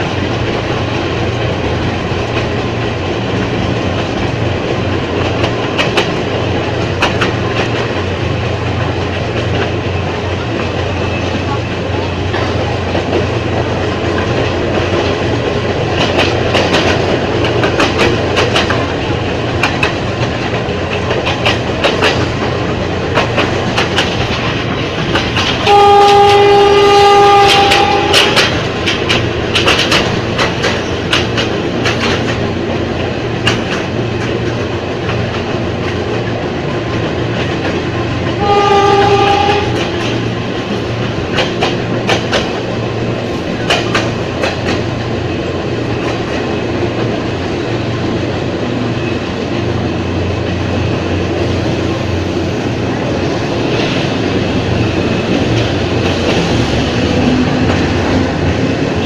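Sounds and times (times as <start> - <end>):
train running hum: 0.0 - 59.0
train wheels clacking over rail joints: 0.0 - 59.0
two-tone train horn: 25.6 - 28.5, 38.4 - 40.1.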